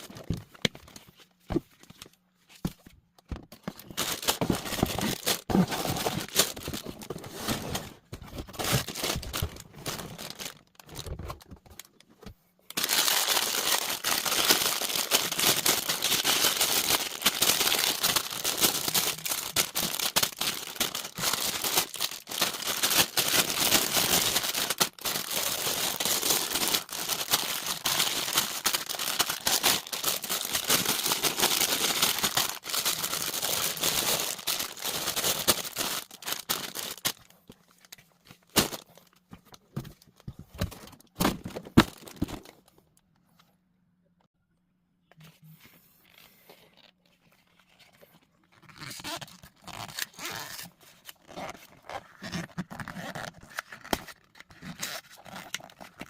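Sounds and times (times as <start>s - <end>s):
plastic bags rustling and clicking: 0.0s - 42.9s
plastic bags crinkling: 3.6s - 12.1s, 12.7s - 39.2s.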